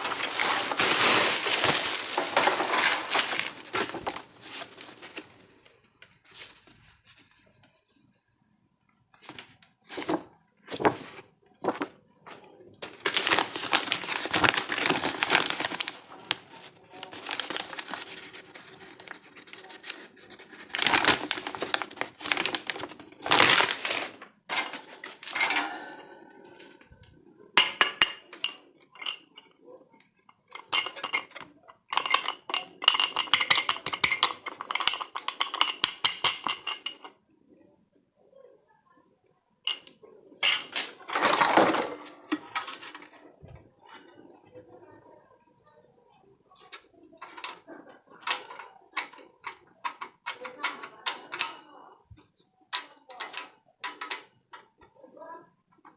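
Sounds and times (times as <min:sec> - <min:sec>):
packaging crinkling and tearing: 0:00.0 - 0:05.4, 0:12.8 - 0:25.4
fan parts knocking and clinking: 0:27.6 - 0:29.4, 0:30.5 - 0:37.1.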